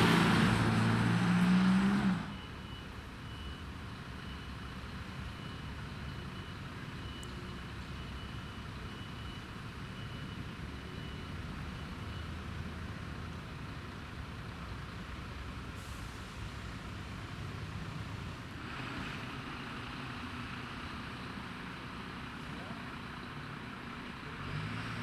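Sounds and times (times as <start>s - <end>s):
diesel engine running: 0.0s - 3.4s
reversing beeper: 0.0s - 12.4s.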